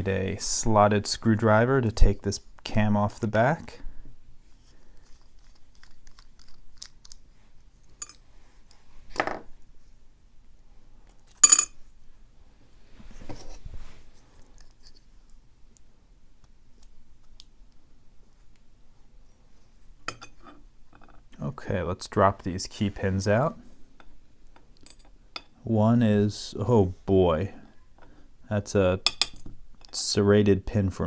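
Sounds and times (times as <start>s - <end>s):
small metal clicks and scrapes: 5.0s - 8.2s.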